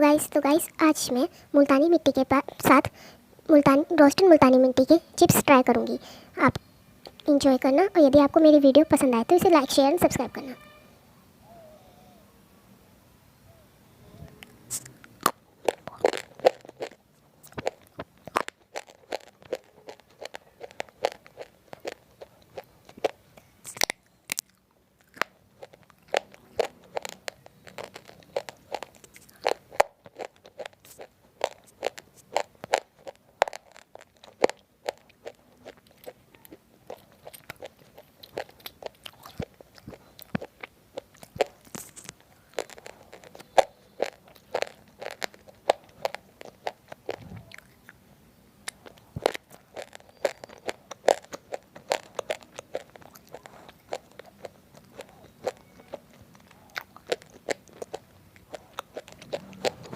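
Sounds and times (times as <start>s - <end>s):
crisp chips crunching: 14.4s - 48.0s, 48.6s - 59.9s.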